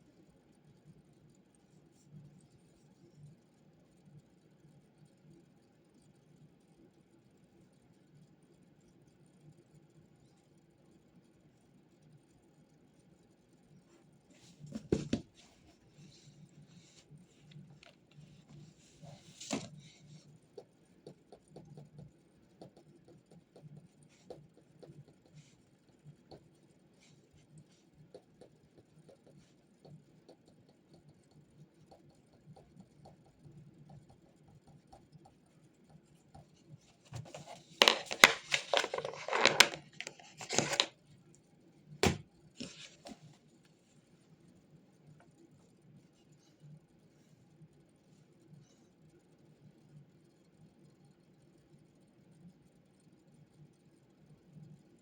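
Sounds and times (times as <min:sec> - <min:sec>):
paper rustling: 0:14.5 - 0:20.0, 0:36.8 - 0:40.9, 0:42.0 - 0:43.3
pen scratching and tapping: 0:14.7 - 0:41.0.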